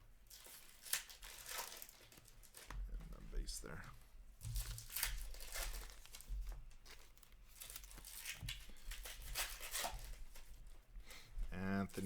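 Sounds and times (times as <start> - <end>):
foil wrappers crinkling and tearing: 0.3 - 2.8, 4.6 - 10.6.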